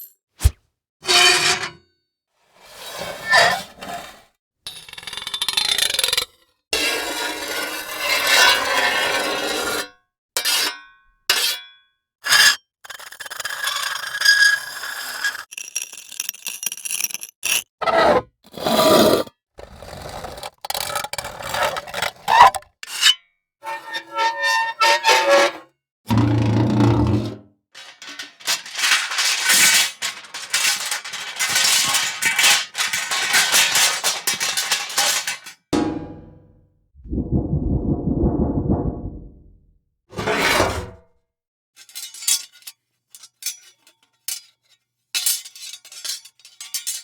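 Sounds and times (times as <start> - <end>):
foley scrapes and rubs: 37.0 - 39.6.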